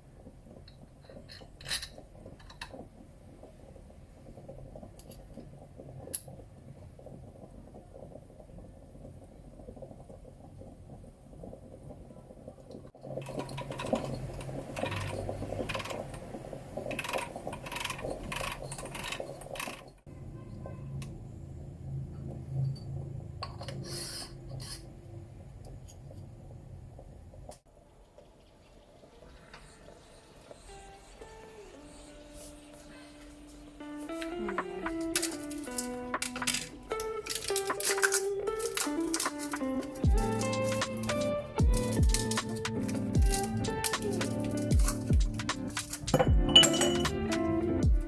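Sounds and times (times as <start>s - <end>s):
kitchenware clinks and rattles: 1.0s - 2.7s, 13.2s - 16.1s, 34.4s - 47.4s.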